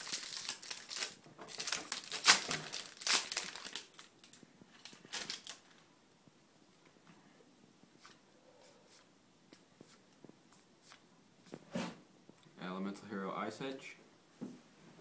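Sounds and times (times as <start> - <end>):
foil pack crinkling open: 0.0 - 5.8.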